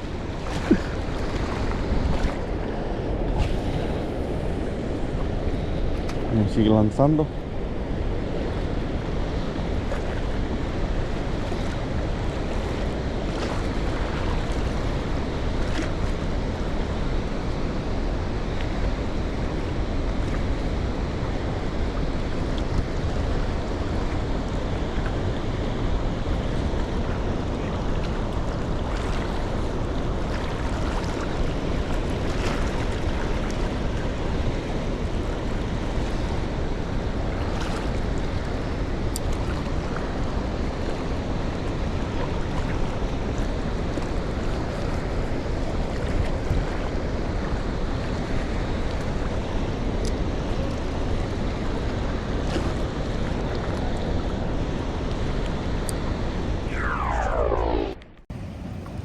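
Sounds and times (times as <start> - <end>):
wind on microphone: 52.2 - 59.0.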